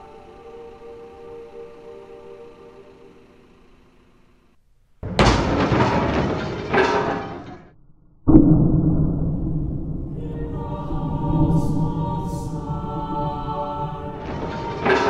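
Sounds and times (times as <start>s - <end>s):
choir singing: 0.0s - 3.6s, 10.1s - 15.0s.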